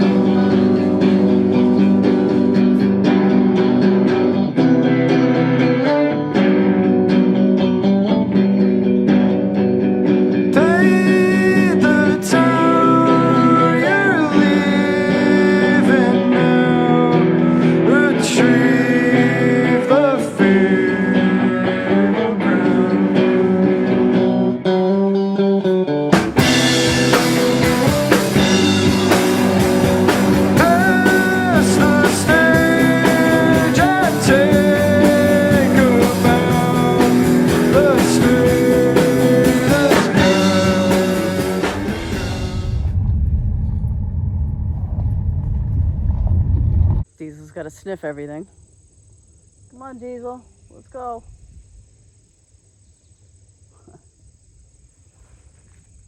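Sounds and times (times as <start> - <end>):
drums: 0.0 - 24.5, 25.7 - 47.2
rock song with singing: 0.0 - 43.0
low rumble: 40.6 - 47.0.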